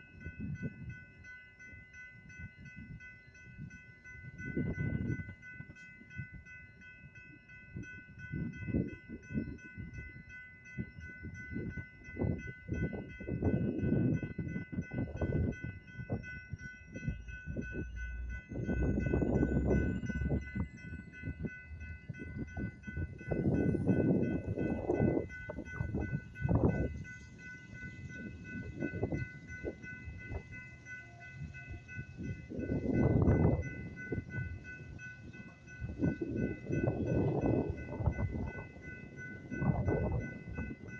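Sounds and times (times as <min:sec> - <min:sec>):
crossing warning bell ringing: 0:00.0 - 0:40.9
train wheels rumbling and clattering: 0:10.8 - 0:40.9.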